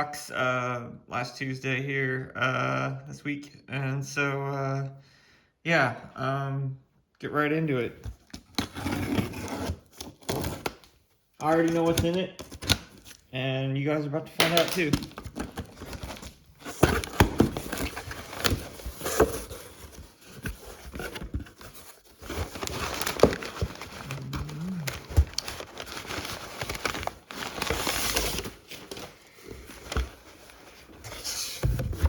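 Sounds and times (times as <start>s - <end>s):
cardboard crinkling and rustling: 8.0s - 13.3s, 14.4s - 32.0s
cardboard tearing: 8.2s - 13.2s, 14.5s - 29.2s.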